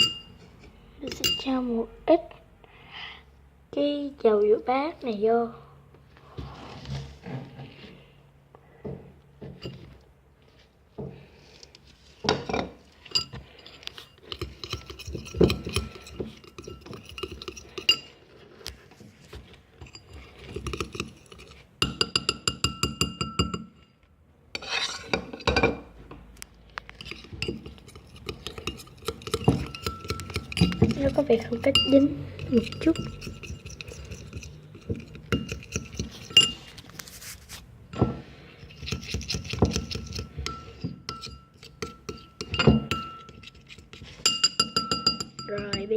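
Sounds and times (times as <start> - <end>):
utensil clinking on glass bowl: 0.0 - 0.4, 1.0 - 1.6, 12.3 - 18.2, 19.8 - 23.9, 27.0 - 36.7, 37.9 - 45.9.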